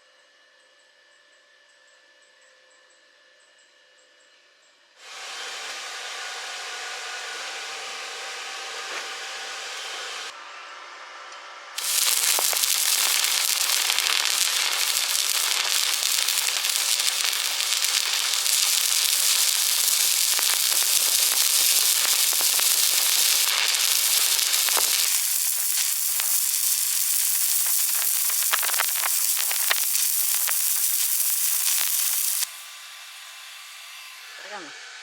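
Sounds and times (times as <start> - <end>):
welding arc crackling and hissing: 11.8 - 32.8.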